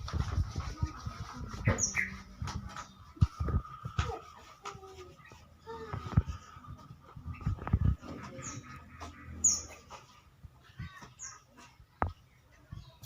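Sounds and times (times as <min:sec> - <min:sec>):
bird chirping: 0:01.5 - 0:03.9, 0:05.2 - 0:13.0.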